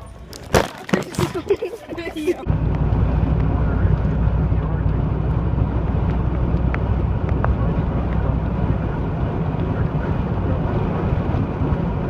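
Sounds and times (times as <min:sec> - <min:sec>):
road noise: 0:00.0 - 0:12.0
car engine drone: 0:02.4 - 0:12.0
wind buffeting microphone: 0:02.4 - 0:12.0.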